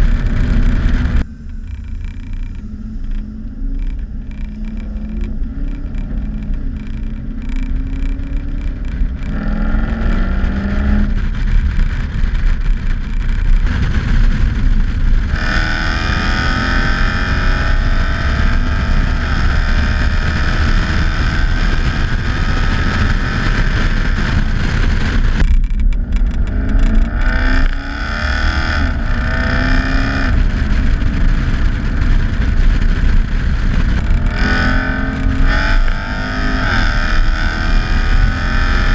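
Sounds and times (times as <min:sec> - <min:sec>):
car engine under load: 0:00.0 - 0:38.9
steady drivetrain whine: 0:00.0 - 0:38.9.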